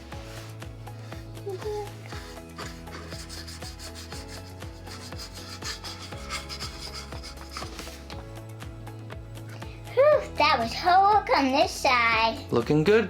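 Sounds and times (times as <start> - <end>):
paintbrush scrubbing: 0.0 - 8.2
soft background music: 0.0 - 13.0.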